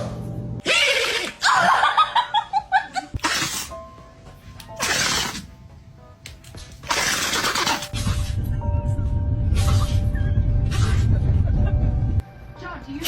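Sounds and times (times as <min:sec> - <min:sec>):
faint background music: 0:00.0 - 0:13.0
dog sneezing: 0:03.2 - 0:03.8, 0:04.7 - 0:05.5, 0:06.8 - 0:08.0.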